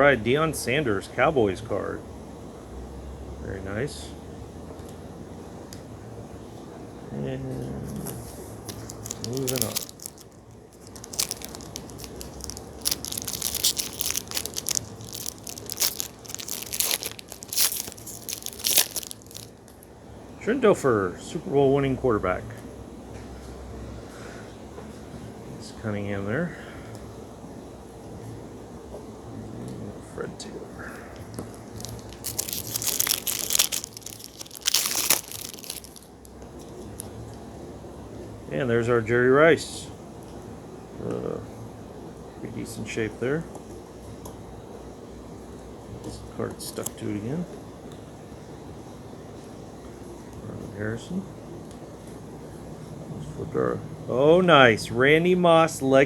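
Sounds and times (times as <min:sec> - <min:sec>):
card pack wrapper crinkling: 0:08.6 - 0:19.8, 0:31.4 - 0:37.1.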